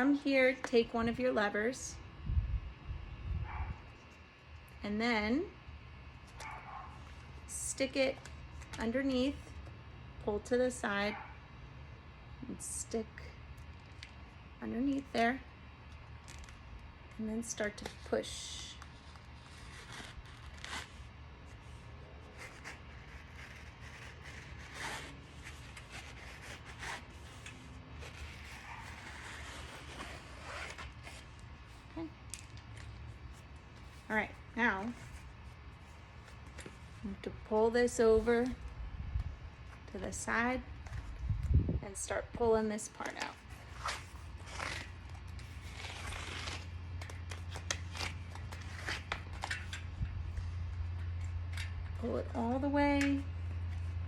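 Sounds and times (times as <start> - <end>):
low steady hum: 0.0 - 54.0
tyre rubbing scrape: 22.2 - 31.4.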